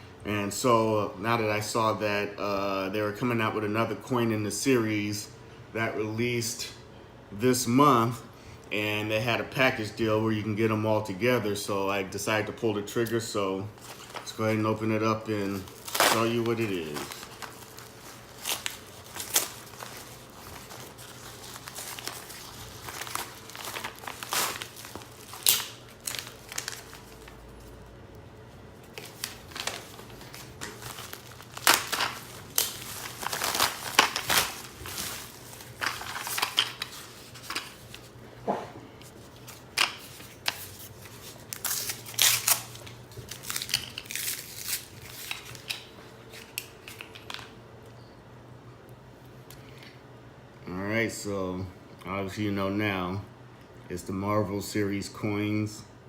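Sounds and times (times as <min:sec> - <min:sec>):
packing material rustling and tearing: 0:13.7 - 0:27.8, 0:28.8 - 0:38.2, 0:39.0 - 0:47.4.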